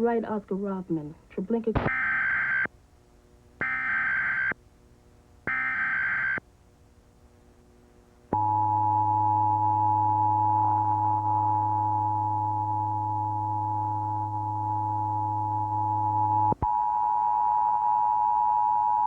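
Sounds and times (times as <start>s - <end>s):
low hum: 8.3s - 19.0s.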